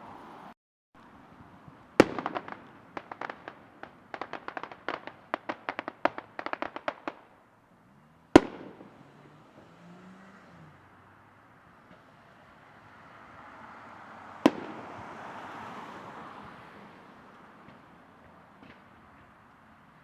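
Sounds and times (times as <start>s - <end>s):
fireworks bangs: 1.7s - 7.4s, 8.3s - 9.8s, 14.4s - 15.4s
sharp crackling pops: 1.8s - 7.5s, 8.4s - 9.7s, 14.5s - 15.1s, 17.6s - 19.6s.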